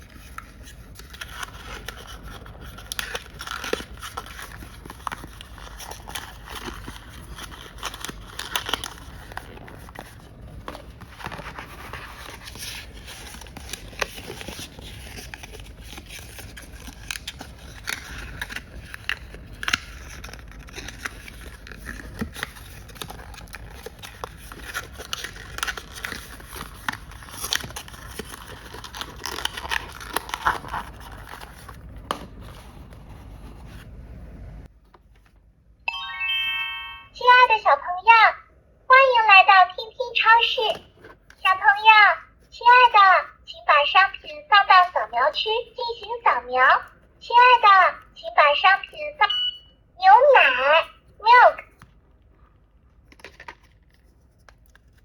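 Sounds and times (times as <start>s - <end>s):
packaging crinkling: 0.1s - 32.6s, 52.9s - 55.0s
toy electronic chime: 35.9s - 37.2s.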